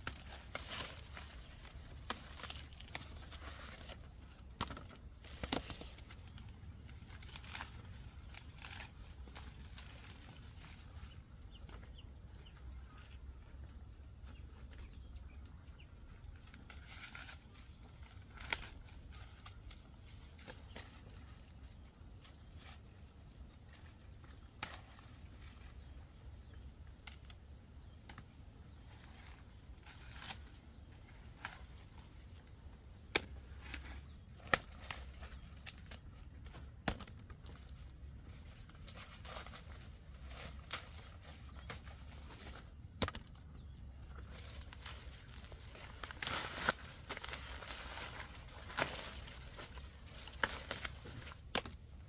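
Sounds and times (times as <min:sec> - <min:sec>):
twigs snapping and rustling: 0:00.0 - 0:10.7, 0:16.3 - 0:21.1, 0:24.4 - 0:28.3, 0:31.3 - 0:52.0.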